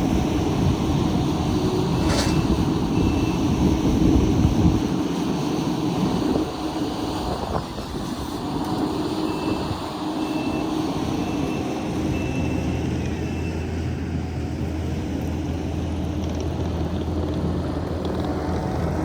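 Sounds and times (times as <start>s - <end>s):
heavy diesel equipment running: 0.0s - 19.0s
backup alarm beeping: 1.8s - 3.8s.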